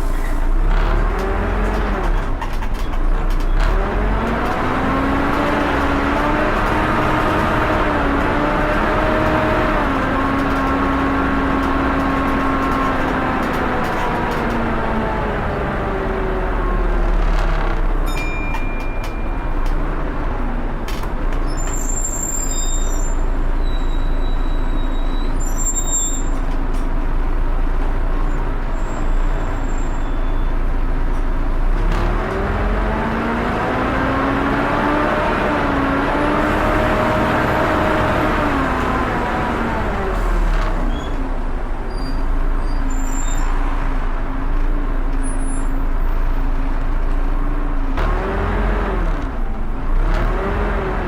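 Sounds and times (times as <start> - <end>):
bus engine low rumble: 0.0 - 51.0
high squeaks: 21.4 - 26.4
bus engine cooling fan rushing: 32.3 - 41.9.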